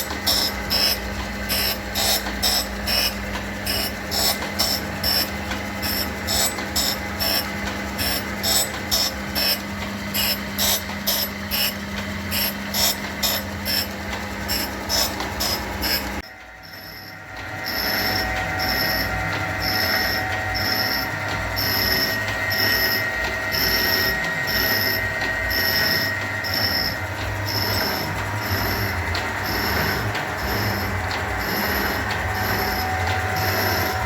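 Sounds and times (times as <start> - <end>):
rapid repeated clicking: 0.0 - 16.2
grinder humming: 0.0 - 34.0.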